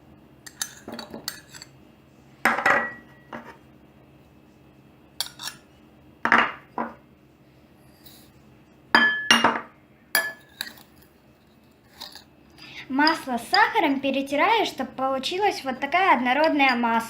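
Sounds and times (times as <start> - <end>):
utensil clinking against mixing bowl: 0.5 - 1.7, 10.2 - 11.0, 13.0 - 13.8.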